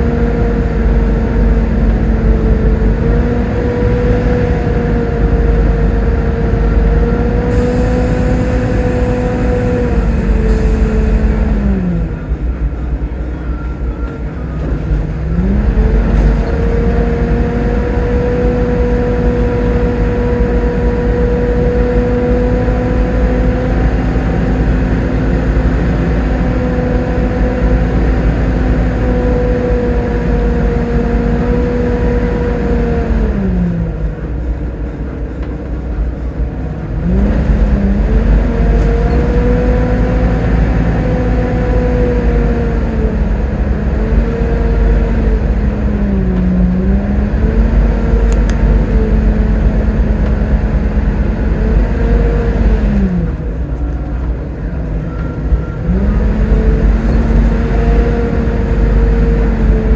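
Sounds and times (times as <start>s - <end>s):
bus engine whining: 0.0s - 59.9s.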